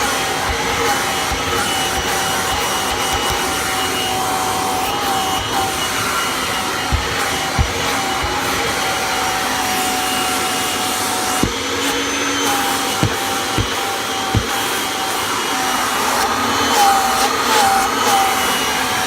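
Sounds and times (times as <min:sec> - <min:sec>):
vacuum cleaner running: 0:00.0 - 0:19.0
dull knocks: 0:00.4 - 0:03.6, 0:06.8 - 0:09.0, 0:11.3 - 0:12.0, 0:12.8 - 0:14.6.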